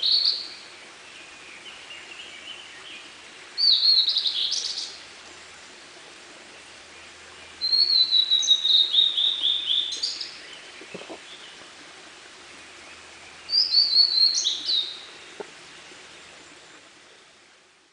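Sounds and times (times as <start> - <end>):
bird singing whistled notes: 3.6 - 4.9, 7.6 - 10.6, 13.4 - 15.1.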